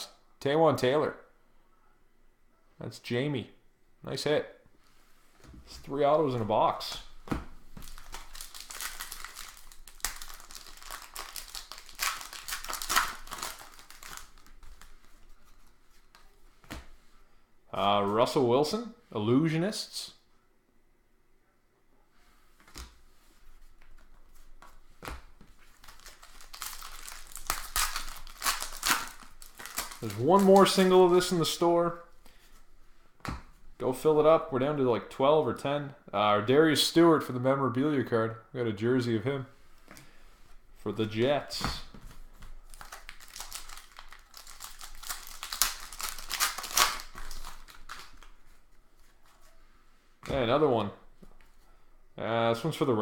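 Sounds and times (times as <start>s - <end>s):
cards being shuffled: 6.3s - 17.0s, 22.6s - 31.6s, 41.6s - 49.6s
wrapper crinkling and tearing: 7.8s - 16.3s, 25.7s - 31.6s, 42.6s - 48.6s.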